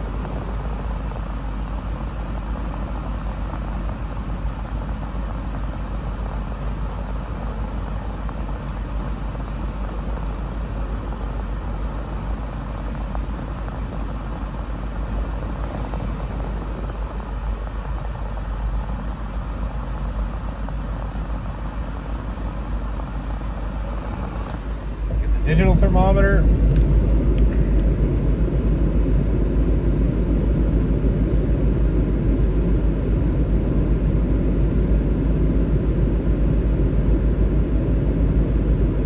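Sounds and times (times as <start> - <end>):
car engine idling: 0.0 - 30.5
heater blower air rush: 0.0 - 39.0.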